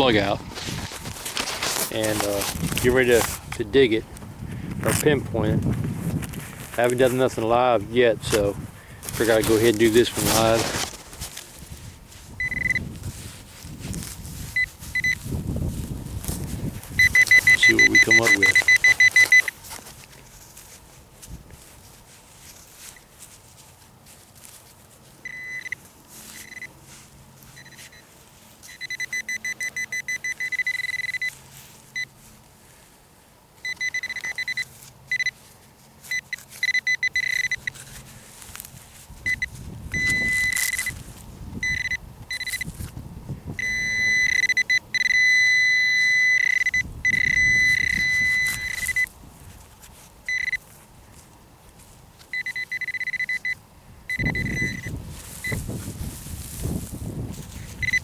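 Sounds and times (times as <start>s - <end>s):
dirt being dug and scraped: 0.0s - 33.0s, 33.7s - 43.0s, 43.6s - 53.5s, 54.1s - 58.0s
metal detector pinpointer beeping: 12.4s - 13.0s, 14.0s - 15.4s, 16.2s - 19.6s, 25.2s - 26.8s, 27.5s - 32.2s, 33.6s - 35.4s, 36.0s - 38.0s, 39.2s - 49.2s, 50.2s - 50.8s, 52.2s - 56.9s, 57.5s - 58.0s.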